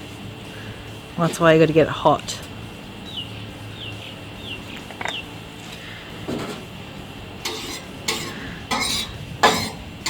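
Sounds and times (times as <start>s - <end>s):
metal scraper rasping on steel plate: 7.4s - 9.9s.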